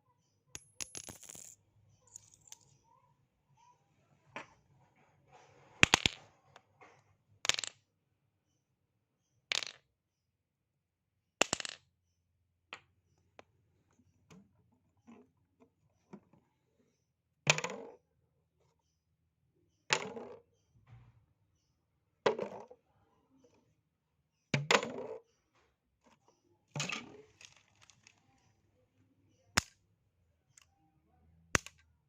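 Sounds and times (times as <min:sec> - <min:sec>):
objects dropping on hard surface: 0:00.6 - 0:02.8, 0:05.8 - 0:07.8, 0:26.8 - 0:28.3.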